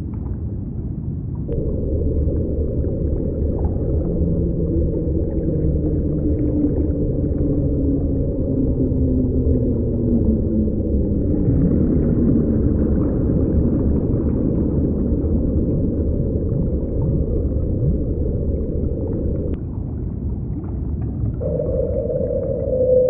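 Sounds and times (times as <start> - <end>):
muffled underwater ocean rumble: 0.0 - 23.0
steady higher hum: 1.5 - 19.7, 21.4 - 23.0
low moaning tones: 1.5 - 19.8, 21.3 - 23.0.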